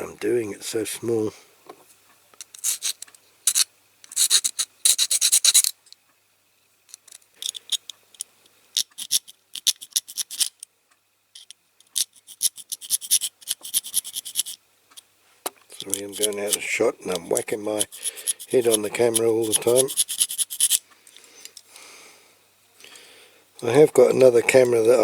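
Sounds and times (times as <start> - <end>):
hand file rasping on metal: 12.3 - 14.6, 15.8 - 16.6, 17.2 - 20.8.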